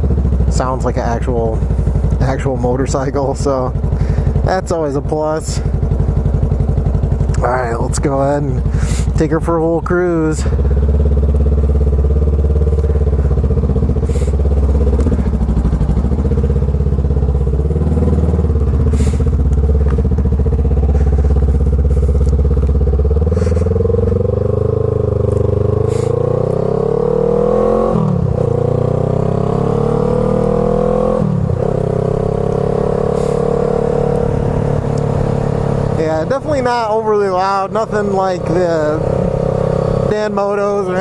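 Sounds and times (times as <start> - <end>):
motorcycle engine while riding: 0.0 - 41.0.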